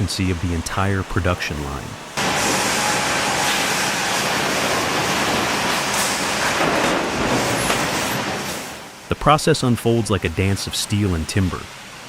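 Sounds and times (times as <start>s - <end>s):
band saw cutting log: 0.0s - 8.2s.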